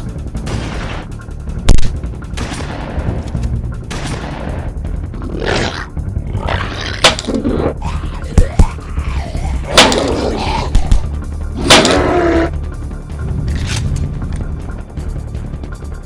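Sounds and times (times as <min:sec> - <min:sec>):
background music: 0:00.0 - 0:16.0.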